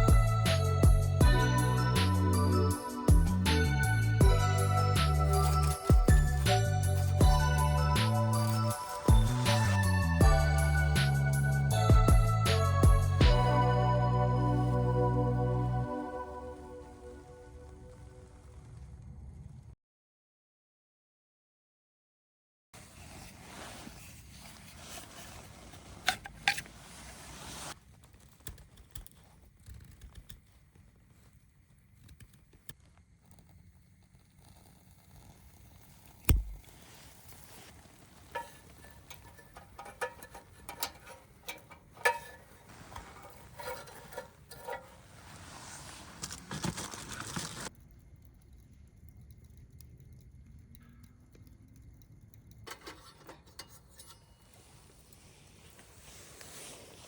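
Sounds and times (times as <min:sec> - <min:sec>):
metallic clinks on fire pit: 0:00.0 - 0:13.2, 0:37.9 - 0:45.2, 0:47.8 - 0:55.2.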